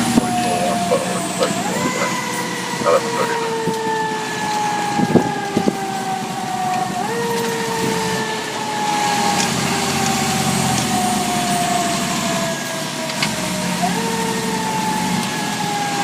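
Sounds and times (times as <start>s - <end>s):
truck engine running: 0.0s - 6.0s
fire engine siren: 0.0s - 16.0s.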